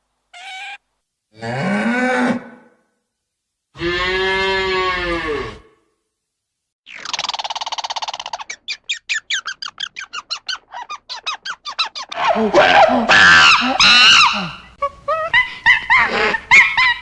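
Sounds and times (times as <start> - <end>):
wavering animal cries: 0.3 - 0.8, 8.4 - 17.0
animal squeaks: 0.4 - 0.8, 6.9 - 14.5.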